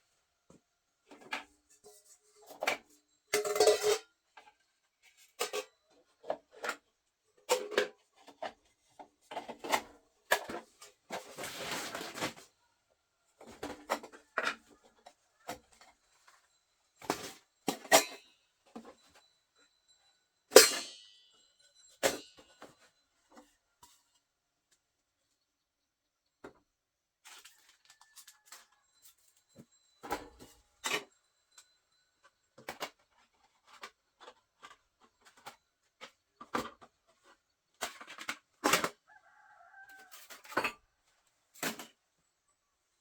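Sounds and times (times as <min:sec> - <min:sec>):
objects knocking and clattering: 0:01.1 - 0:12.4, 0:13.4 - 0:19.3, 0:29.5 - 0:39.0
metal or crockery clink: 0:02.5 - 0:04.1, 0:20.5 - 0:22.8.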